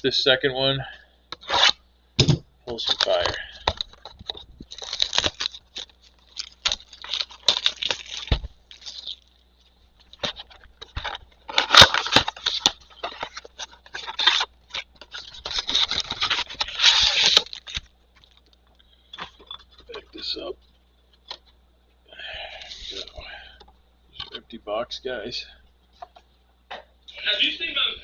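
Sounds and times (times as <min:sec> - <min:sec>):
tearing and crinkling packaging: 0:02.7 - 0:18.6.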